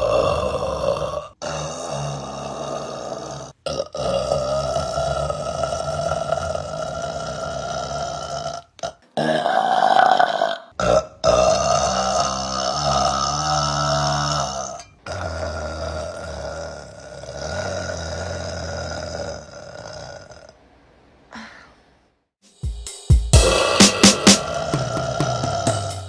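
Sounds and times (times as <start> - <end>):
woman burping: 9.0 - 10.7.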